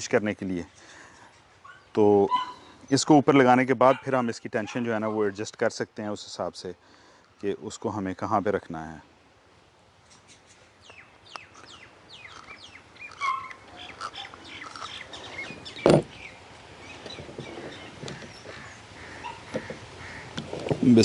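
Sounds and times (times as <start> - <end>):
birds chirping: 0.0 - 5.6, 10.0 - 21.0.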